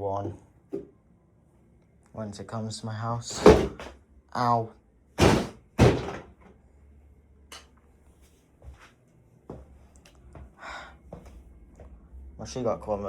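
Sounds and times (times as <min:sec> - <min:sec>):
loud knocks: 0:03.3 - 0:04.0, 0:05.2 - 0:06.4.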